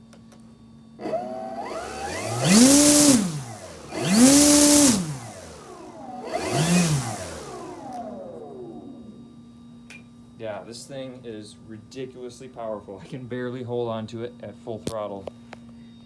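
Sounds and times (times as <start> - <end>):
model airplane motor whine: 1.0 - 9.4
propeller wash rushing: 1.3 - 9.1.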